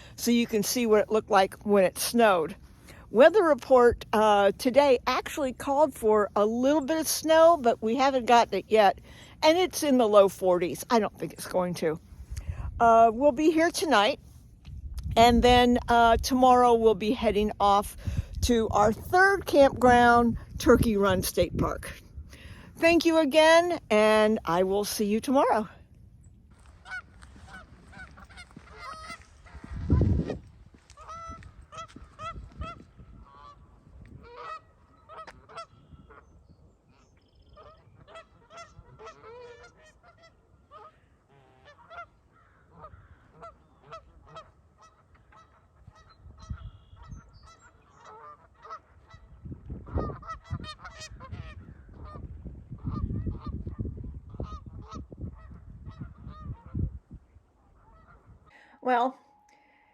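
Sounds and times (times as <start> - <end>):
geese honking: 26.7 - 36.3, 36.9 - 52.2, 57.8 - 59.0.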